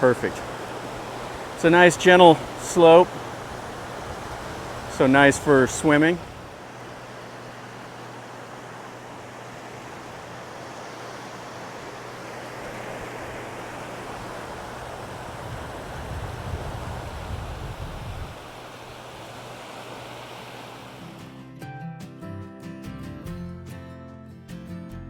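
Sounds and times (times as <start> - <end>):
small surf washing onto beach: 0.0 - 21.3
wind rumble on microphone: 3.3 - 6.6, 14.2 - 19.3.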